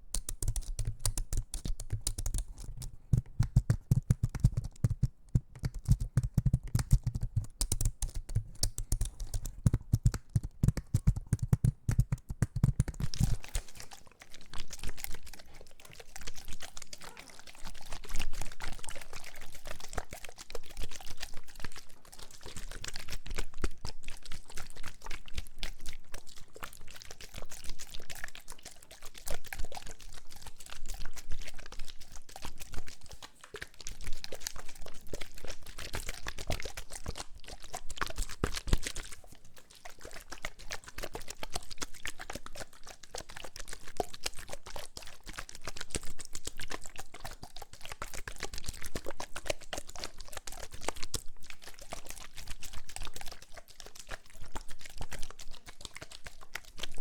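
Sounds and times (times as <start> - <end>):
rapid close tapping and clicking: 0.0 - 13.8.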